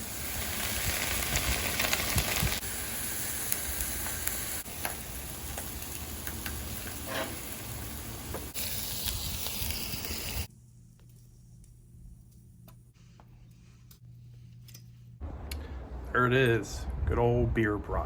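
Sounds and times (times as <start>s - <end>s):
food sizzling on griddle: 0.0s - 10.5s.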